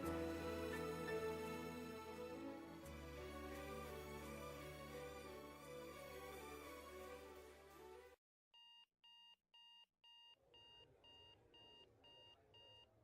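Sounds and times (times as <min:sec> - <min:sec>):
background music: 0:00.0 - 0:08.2.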